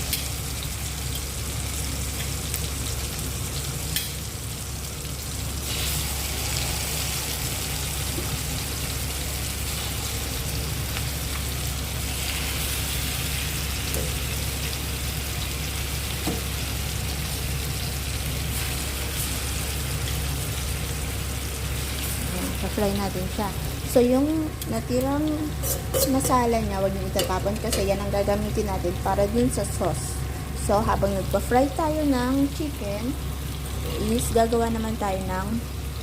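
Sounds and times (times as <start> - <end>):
chicken sizzling in a pan: 0.0 - 36.0
steady low hum: 0.0 - 36.0.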